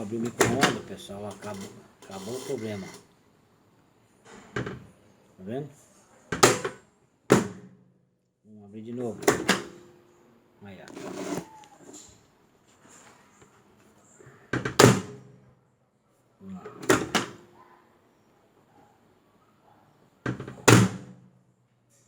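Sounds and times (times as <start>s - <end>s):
microwave door clicking shut: 16.8s - 17.4s.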